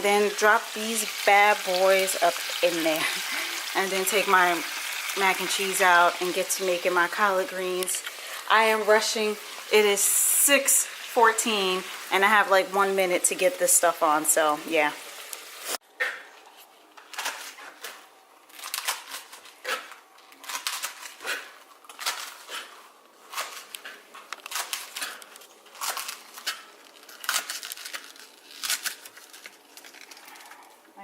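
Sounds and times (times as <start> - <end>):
leafy greens crinkling and tearing: 16.4 - 30.8.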